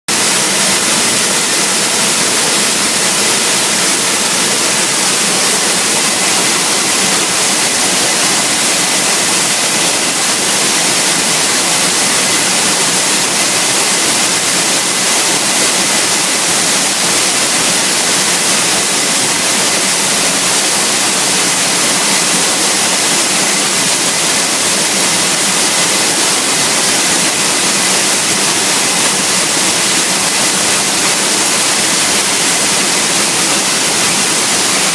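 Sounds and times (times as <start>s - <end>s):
waterfall roaring: 0.1s - 34.9s.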